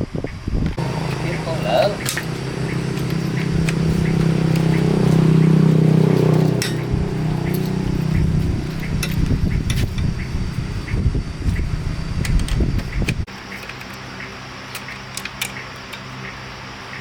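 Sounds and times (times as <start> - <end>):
generator engine running: 0.7 - 13.3
light metallic clinks: 0.8 - 14.1.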